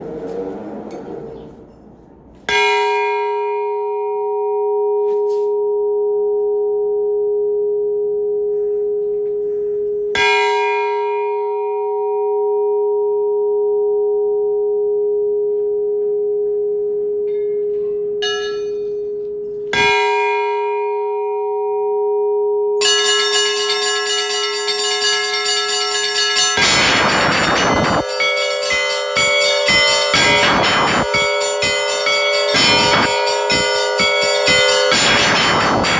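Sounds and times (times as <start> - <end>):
large church bell ringing: 0.3 - 35.9
small bells pealing quickly: 18.2 - 19.0, 22.8 - 35.9.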